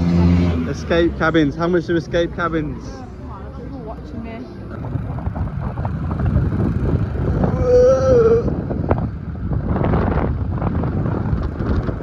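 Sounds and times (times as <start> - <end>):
road noise: 0.0 - 12.0
wind buffeting microphone: 4.1 - 12.0.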